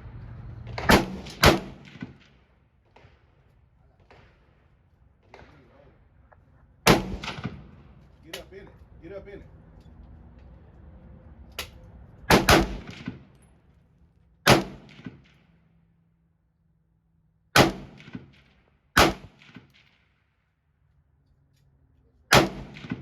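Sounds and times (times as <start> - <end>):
pistol shots: 0.8 - 2.3, 6.8 - 7.8, 12.3 - 13.3, 14.4 - 15.4, 17.6 - 18.4, 19.0 - 19.9, 22.3 - 23.0.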